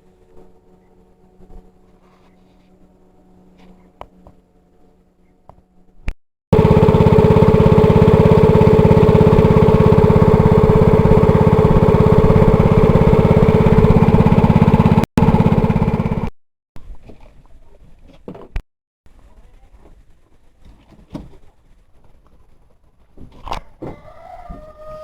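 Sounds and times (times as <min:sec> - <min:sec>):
small engine running: 0:06.6 - 0:16.3.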